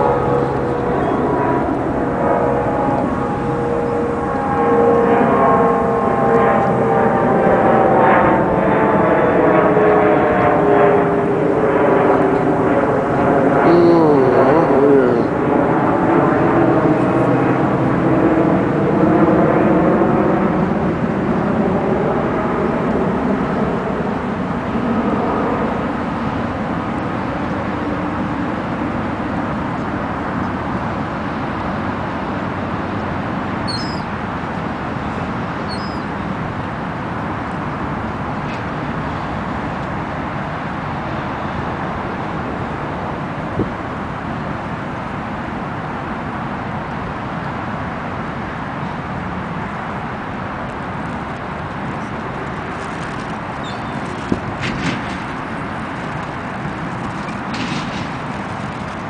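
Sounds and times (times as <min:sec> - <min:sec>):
steady rushing noise: 0:00.0 - 0:19.0, 0:36.2 - 0:59.0
passing engine drone: 0:00.0 - 0:35.8.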